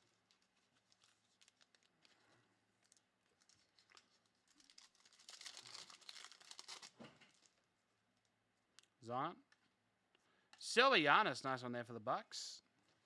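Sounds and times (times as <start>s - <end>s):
wrapper crinkling and tearing: 0.0s - 7.6s.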